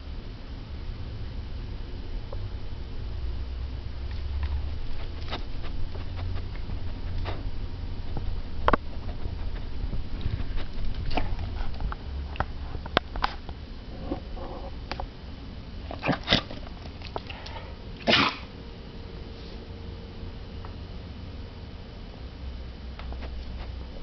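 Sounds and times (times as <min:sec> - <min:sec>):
low rumble: 0:00.0 - 0:18.0
dog sniffing: 0:04.0 - 0:11.9.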